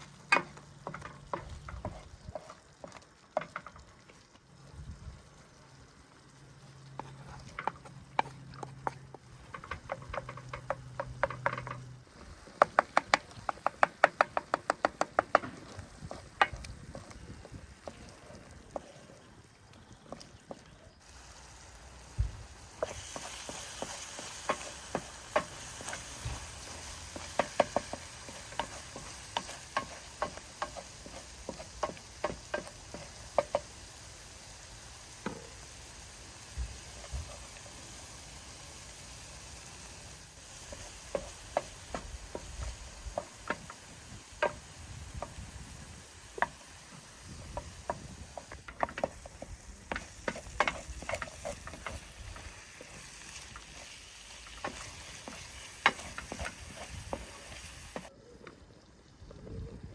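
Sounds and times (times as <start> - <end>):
utensil tapping and scraping pan: 0.0 - 4.1, 6.9 - 19.2, 22.7 - 33.8, 40.5 - 45.5, 46.3 - 58.1
food sizzling in a frying pan: 0.0 - 58.1.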